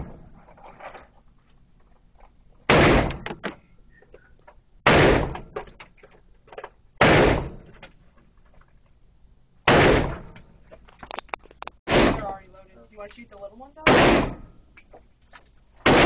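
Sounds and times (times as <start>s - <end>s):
gunshots with echo: 4.8s - 5.4s, 7.0s - 7.6s, 9.7s - 10.3s, 13.9s - 14.5s.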